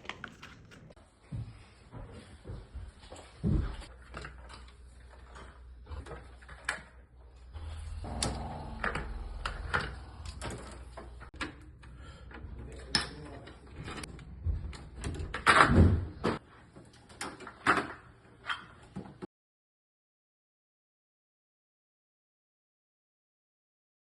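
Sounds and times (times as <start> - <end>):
low steady hum: 3.1 - 14.9.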